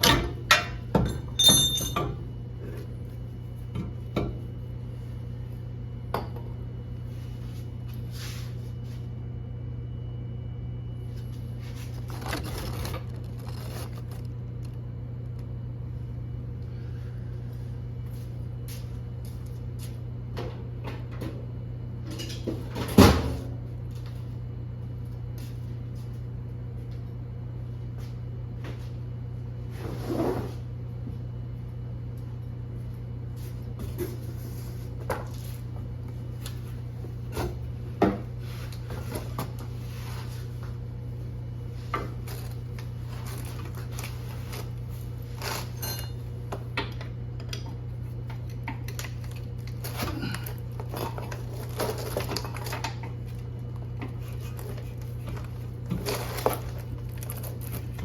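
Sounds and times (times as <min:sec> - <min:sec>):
steady low hum: 0:00.0 - 0:58.0
metal tools clinking: 0:01.2 - 0:02.1.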